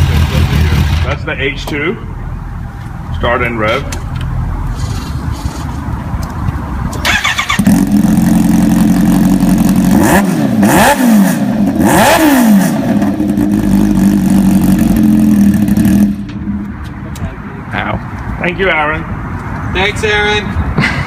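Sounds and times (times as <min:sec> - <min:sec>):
motorcycle engine idling and revving: 0:00.0 - 0:03.2, 0:03.8 - 0:18.4
motorcycle starter cranking: 0:07.0 - 0:07.7.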